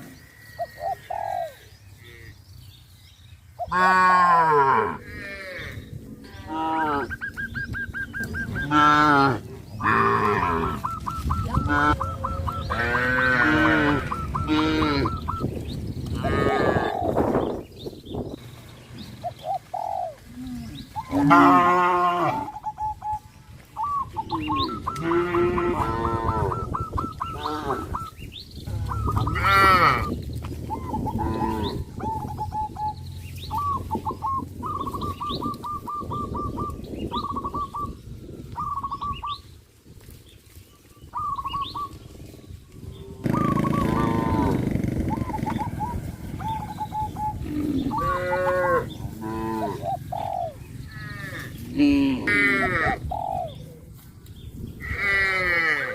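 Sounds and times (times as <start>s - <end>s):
birds calling: 0.0s - 55.9s
cattle mooing: 3.7s - 7.1s, 8.6s - 10.8s, 11.6s - 15.2s, 16.2s - 17.0s, 20.4s - 22.5s, 25.0s - 26.5s, 28.7s - 30.1s, 42.9s - 44.6s, 47.4s - 49.8s, 50.9s - 53.0s, 54.8s - 55.9s.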